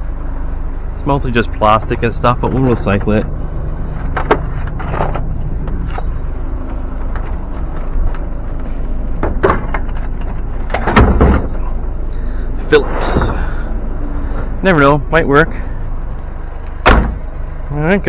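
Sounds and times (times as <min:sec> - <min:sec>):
vehicle engine rumbling: 0:00.0 - 0:18.0
sharp knocks and clunks: 0:04.0 - 0:08.3, 0:09.2 - 0:11.8, 0:13.0 - 0:13.6, 0:16.7 - 0:17.4.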